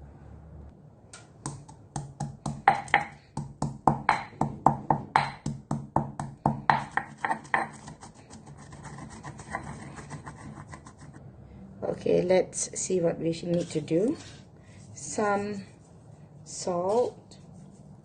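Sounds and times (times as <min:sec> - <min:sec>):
pestle pounding in mortar: 0:01.4 - 0:11.0
pestle grinding: 0:01.4 - 0:11.2.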